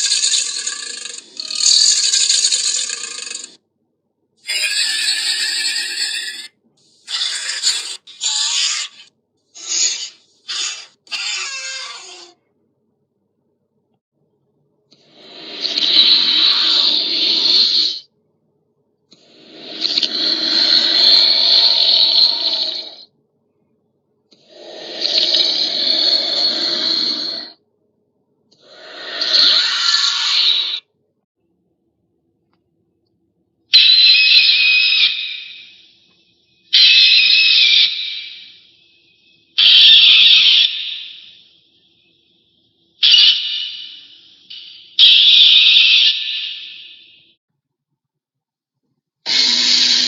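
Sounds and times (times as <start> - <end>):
harsh screeching monster cries: 0.0 - 3.6, 4.5 - 12.4, 15.5 - 18.0, 19.3 - 23.0, 24.5 - 27.6, 28.6 - 30.9, 33.7 - 35.9, 36.7 - 38.7, 39.5 - 41.5, 43.0 - 47.1, 49.3 - 50.0
monster roar: 0.0 - 3.6, 15.5 - 18.0, 19.3 - 23.0, 24.5 - 27.5, 28.7 - 30.8.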